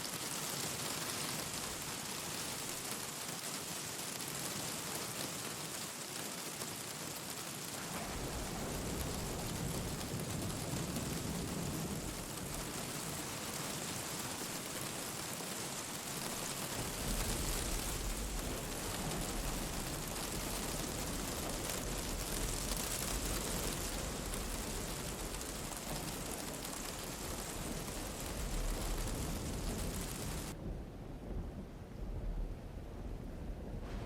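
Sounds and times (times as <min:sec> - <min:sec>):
steady rain falling: 0:00.0 - 0:34.0
low rumble: 0:07.9 - 0:10.7, 0:28.7 - 0:34.0.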